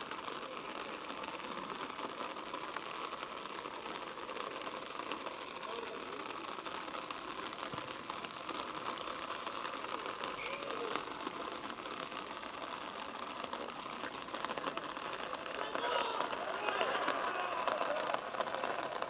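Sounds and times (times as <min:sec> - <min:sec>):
outdoor background hiss: 0:04.5 - 0:19.0
distant voices shouting: 0:14.4 - 0:19.0.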